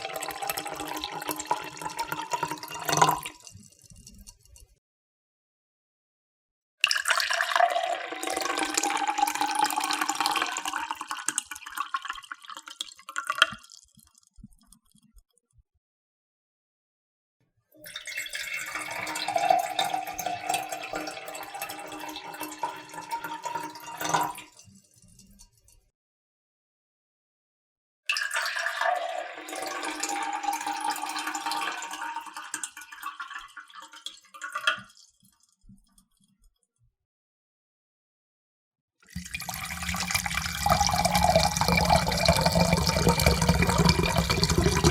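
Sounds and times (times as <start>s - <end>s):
water pouring into a cup: 0.0s - 4.4s, 6.8s - 14.3s, 17.8s - 24.6s, 28.1s - 35.0s, 39.1s - 44.9s
faint water drips: 39.1s - 44.9s.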